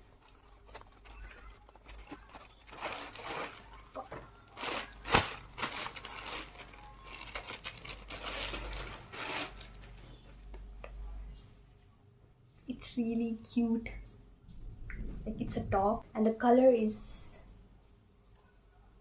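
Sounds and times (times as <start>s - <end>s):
gift packaging crinkling: 0.0s - 10.0s.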